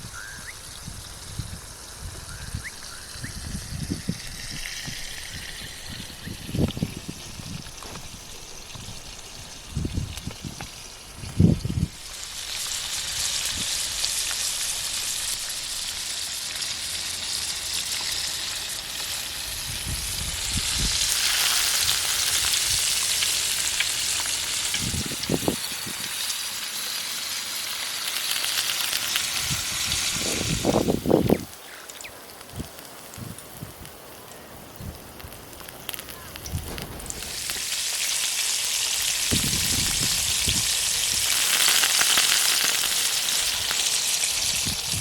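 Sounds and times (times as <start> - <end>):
chicken sizzling in hot oil: 0.0 - 45.0.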